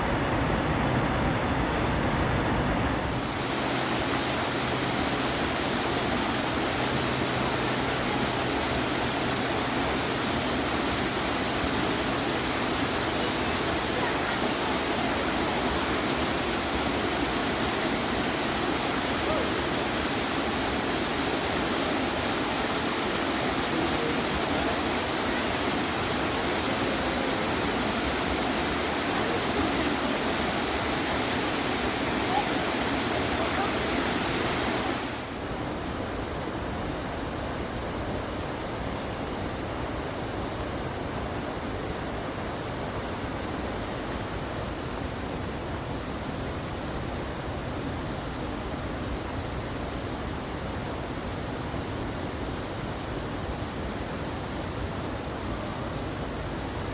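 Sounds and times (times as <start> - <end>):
water cascading over rocks: 3.0 - 36.5.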